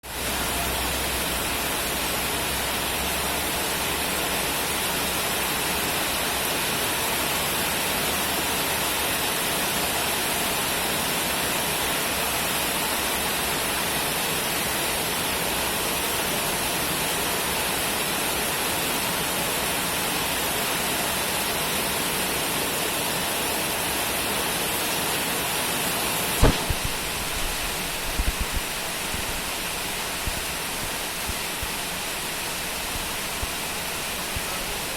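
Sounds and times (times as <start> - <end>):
heavy rain: 0.0 - 34.9
low thump: 26.4 - 29.4.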